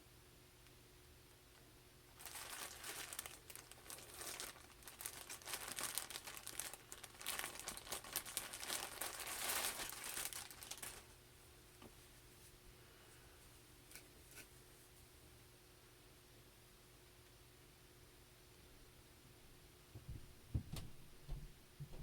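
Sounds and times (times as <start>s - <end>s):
packaging tearing: 2.2s - 11.0s
packaging crinkling and rustling: 2.2s - 11.2s.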